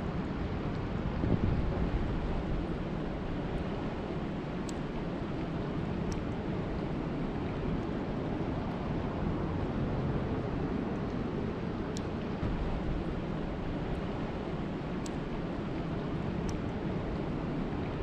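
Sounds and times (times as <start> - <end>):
faint sharp ticks: 4.6 - 4.9, 15.0 - 16.8.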